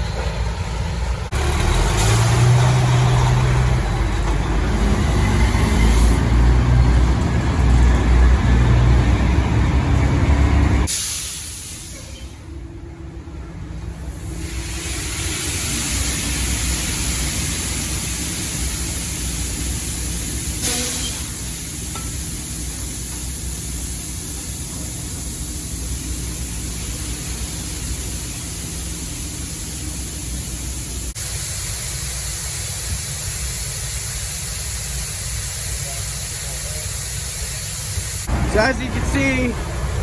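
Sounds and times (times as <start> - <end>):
low engine rumble: 35.0 - 40.0.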